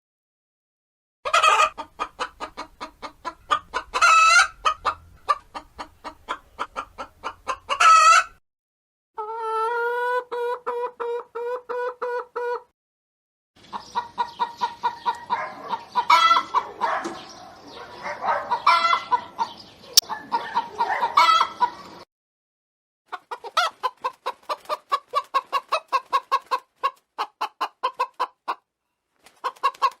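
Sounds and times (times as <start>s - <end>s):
chicken clucking rapidly: 1.3s - 8.4s, 9.2s - 12.7s, 13.6s - 22.0s, 23.1s - 30.0s.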